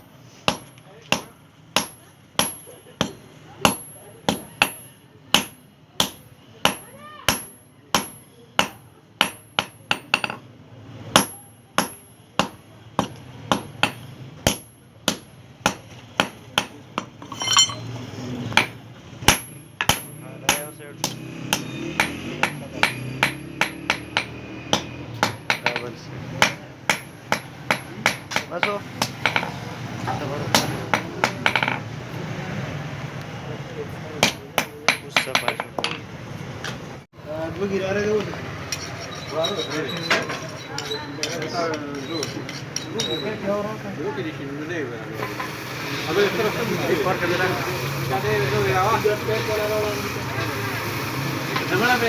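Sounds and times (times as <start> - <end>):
hammer striking iron on anvil: 0.5 - 10.4, 11.1 - 18.0, 18.6 - 29.5, 34.2 - 36.0.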